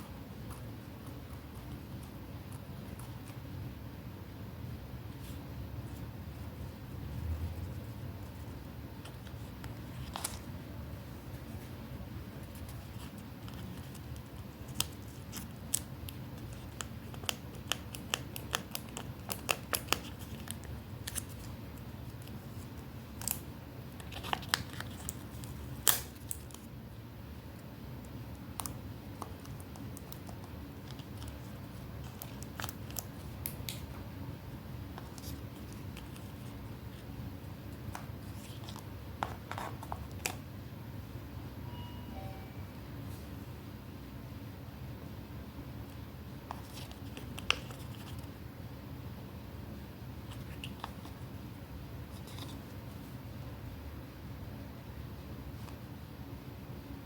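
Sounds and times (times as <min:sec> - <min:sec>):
low hum: 0:40.6 - 0:46.3.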